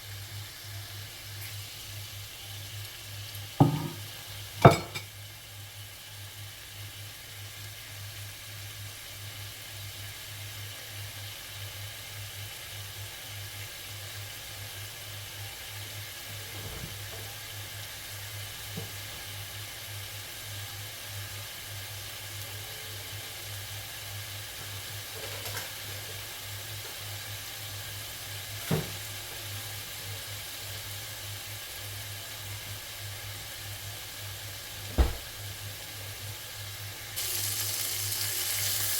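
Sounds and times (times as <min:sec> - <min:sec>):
food sizzling in a frying pan: 0:00.0 - 0:38.9
utensil knocking against pan: 0:03.6 - 0:05.0.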